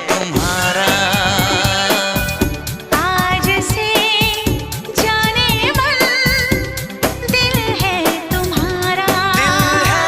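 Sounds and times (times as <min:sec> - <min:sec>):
steady drum beat: 0:00.0 - 0:10.0.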